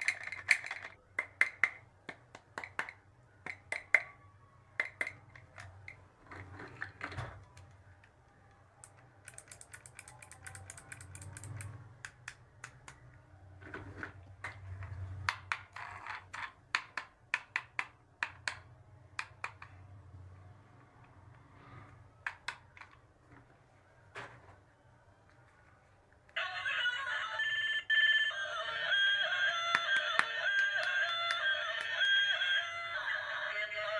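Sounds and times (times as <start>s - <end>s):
plastic toy pieces clicking: 0.0s - 8.2s, 8.8s - 13.1s, 14.4s - 19.8s, 22.2s - 23.0s, 29.0s - 32.6s.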